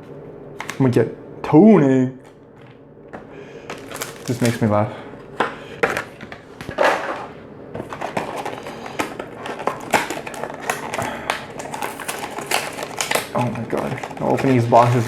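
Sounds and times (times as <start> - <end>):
plastic wrapping crinkling: 3.6 - 4.9, 7.8 - 15.0
cardboard boxes being opened: 3.7 - 4.6, 7.8 - 15.0.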